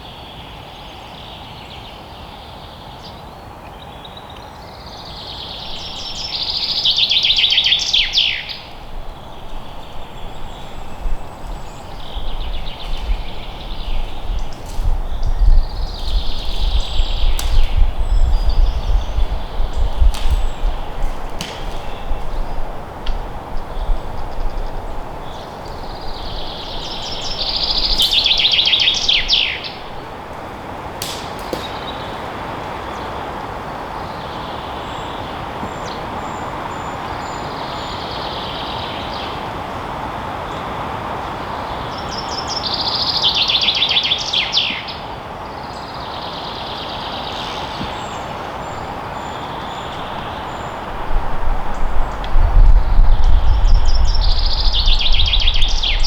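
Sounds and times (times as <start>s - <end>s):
songbird trilling: 4.8s - 38.0s.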